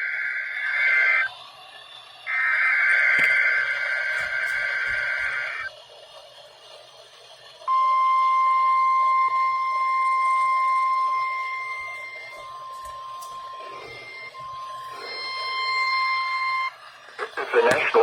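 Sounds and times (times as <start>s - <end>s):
steady warning alarm tone: 2.2s - 5.7s, 7.7s - 18.0s.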